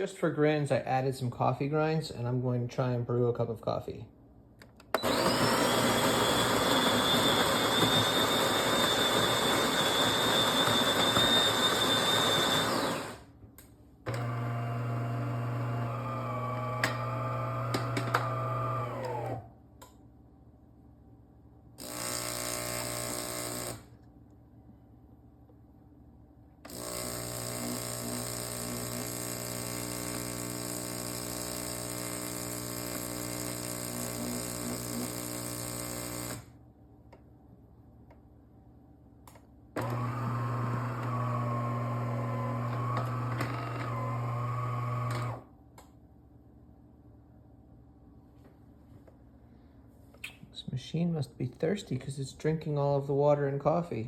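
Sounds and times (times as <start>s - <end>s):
motor whirring with high whine: 5.0s - 13.2s, 14.1s - 19.4s, 39.8s - 45.4s
water pump buzzing: 5.0s - 13.2s, 26.7s - 36.4s, 39.8s - 45.4s.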